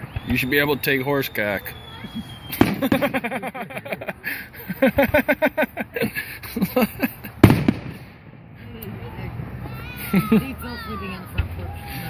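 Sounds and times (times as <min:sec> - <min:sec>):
people laughing hard: 0:02.8 - 0:07.4, 0:09.9 - 0:10.6.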